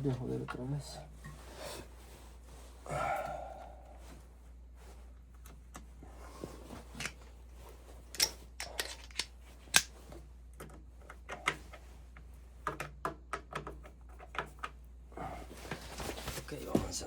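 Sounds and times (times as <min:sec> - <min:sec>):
tools and metal parts clicking: 0:08.1 - 0:09.9.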